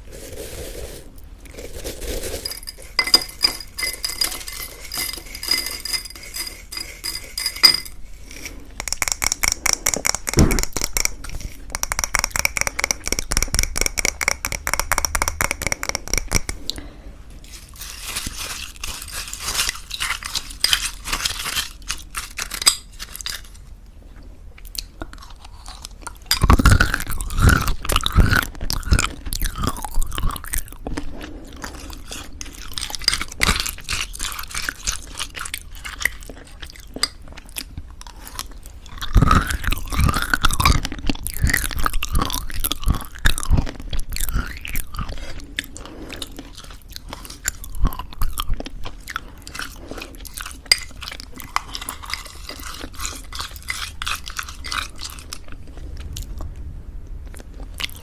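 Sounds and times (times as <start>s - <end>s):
crunching and chewing granola: 0.0s - 3.8s, 8.2s - 56.5s, 57.2s - 58.0s
heavy mouth sounds: 8.8s - 16.9s.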